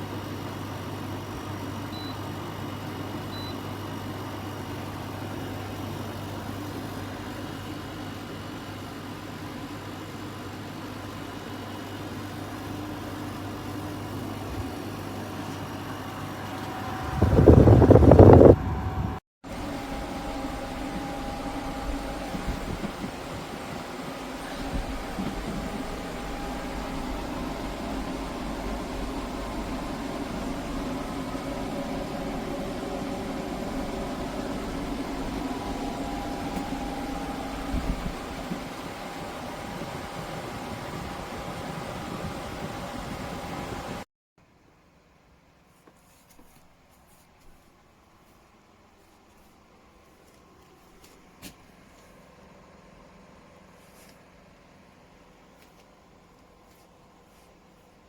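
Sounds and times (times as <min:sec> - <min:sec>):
air conditioner humming: 0:11.3 - 0:44.0
rough rushing sound: 0:16.2 - 0:19.2.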